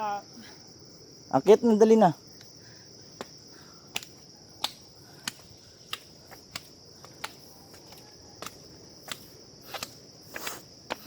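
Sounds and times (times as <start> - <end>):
high-pitched insect drone: 0.0 - 11.0
footsteps on steps: 9.7 - 11.0.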